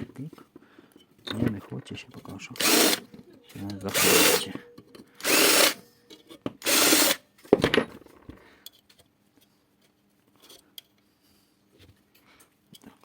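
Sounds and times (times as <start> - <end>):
cordless drill bursts: 2.6 - 3.1, 3.9 - 4.6, 5.2 - 5.8, 6.6 - 7.2.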